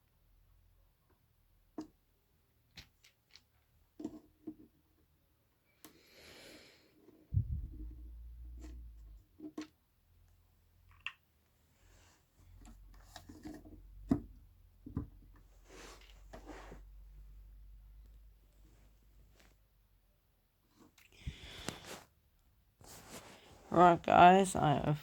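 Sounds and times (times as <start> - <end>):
low rumble: 7.4 - 8.6
scraping and rubbing: 15.6 - 16.8, 22.8 - 24.1.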